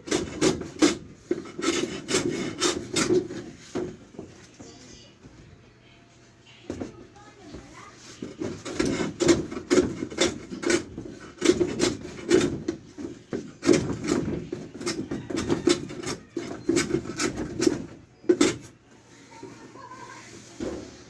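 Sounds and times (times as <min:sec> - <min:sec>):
hand tool rasping on wood: 0:00.0 - 0:03.8, 0:08.1 - 0:18.7.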